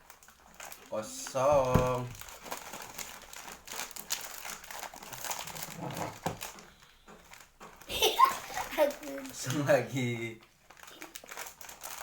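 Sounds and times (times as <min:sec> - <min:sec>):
plastic snack packets crinkling: 0:00.0 - 0:12.0.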